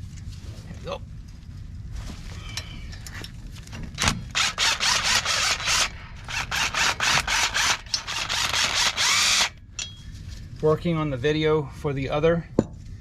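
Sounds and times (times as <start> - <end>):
ratchet wrench clicking: 4.4 - 9.5.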